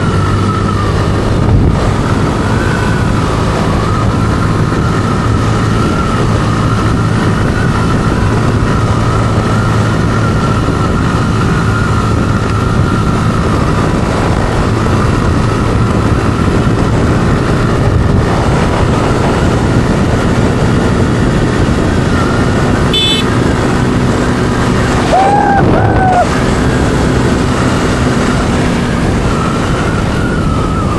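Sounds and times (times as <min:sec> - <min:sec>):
traffic engines running: 0:00.0 - 0:30.9
short high beep: 0:23.0 - 0:23.3.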